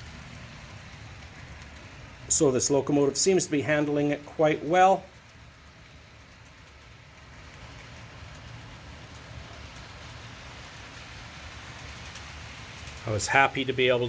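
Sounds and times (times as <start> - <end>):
model train motor hum: 0.0 - 14.0
model train wheels rolling: 0.0 - 14.0.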